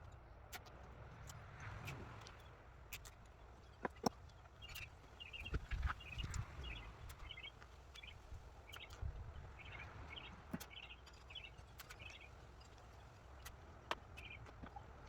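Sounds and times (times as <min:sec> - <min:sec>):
bird chirping: 0:04.6 - 0:13.1, 0:14.2 - 0:14.5.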